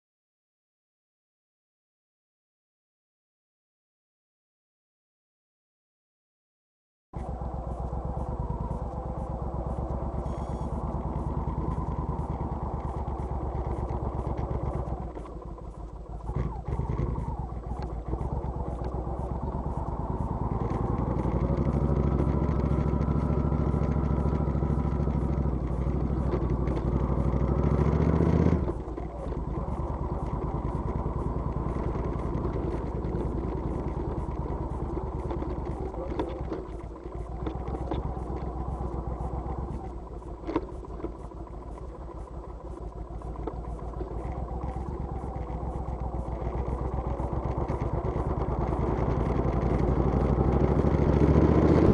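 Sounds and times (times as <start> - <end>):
motorcycle engine revving: 7.2 - 51.9.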